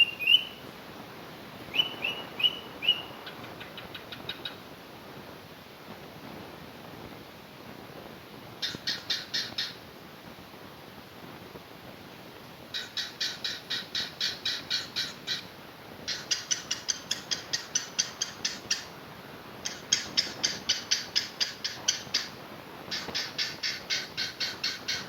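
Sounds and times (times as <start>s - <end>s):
cockatiel chirping: 0.0s - 0.6s, 1.7s - 4.5s, 8.6s - 9.8s, 12.8s - 15.4s, 22.9s - 25.0s.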